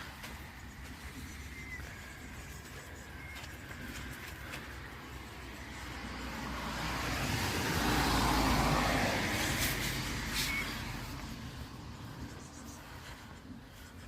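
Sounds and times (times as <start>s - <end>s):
car passing by: 3.7s - 13.3s.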